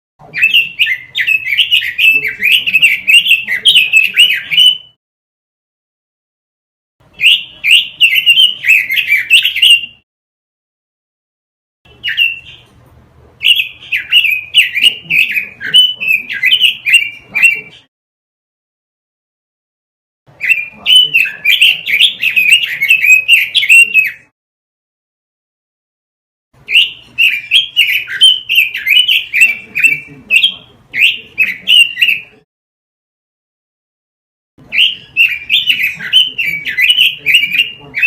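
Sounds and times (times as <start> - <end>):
bird warbling whistled song: 0.3 - 5.0, 7.1 - 10.0, 11.9 - 12.7, 13.4 - 17.8, 20.4 - 24.3, 26.7 - 32.4, 34.7 - 38.0.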